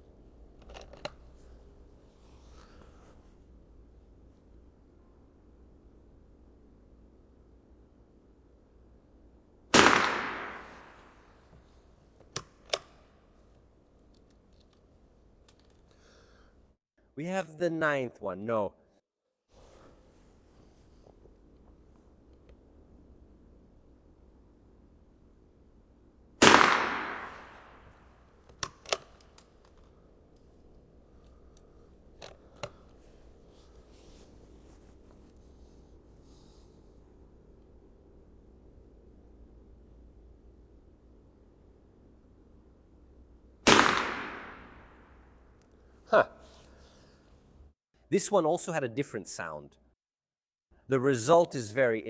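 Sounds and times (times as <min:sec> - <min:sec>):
rifle shot with echo: 0:09.7 - 0:11.2, 0:26.4 - 0:27.9, 0:43.6 - 0:45.1.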